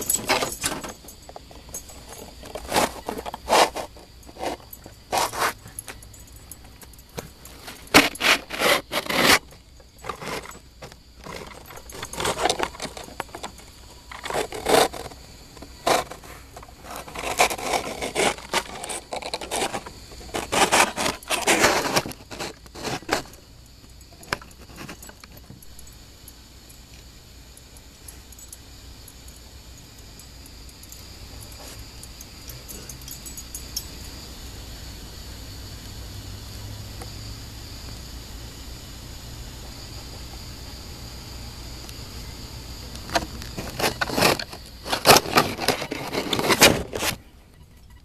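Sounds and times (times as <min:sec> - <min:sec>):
squirrel gnawing on wood: 0:00.0 - 0:06.0, 0:06.6 - 0:23.4, 0:42.9 - 0:47.1.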